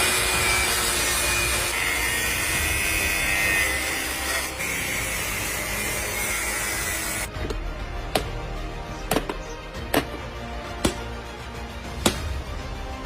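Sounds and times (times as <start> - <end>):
power tool grinding whine: 0.0 - 7.3.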